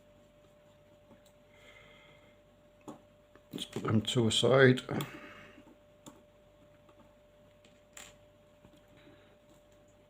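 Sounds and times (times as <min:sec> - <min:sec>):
faint clicks of small parts: 0:04.9 - 0:10.0.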